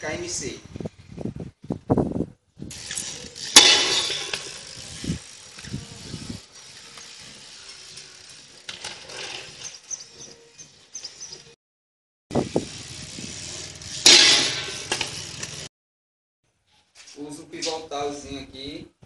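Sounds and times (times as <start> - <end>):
bike clicks and rattles: 2.6 - 11.6, 12.4 - 15.7.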